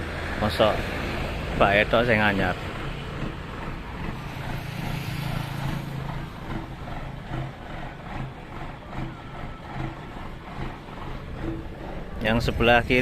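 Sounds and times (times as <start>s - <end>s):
diesel truck engine idling: 0.0s - 13.0s.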